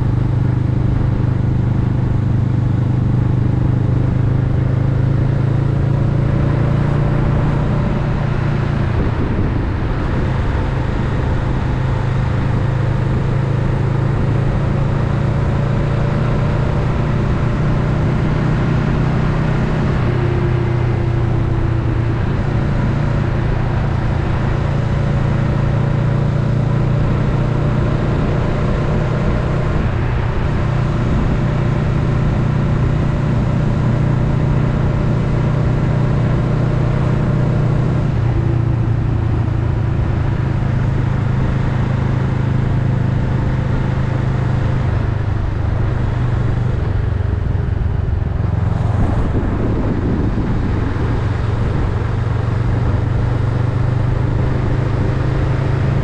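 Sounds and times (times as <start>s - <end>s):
motorcycle engine cruising: 0.0s - 56.0s
road noise: 0.0s - 56.0s
wind noise: 5.7s - 15.2s, 43.3s - 56.0s.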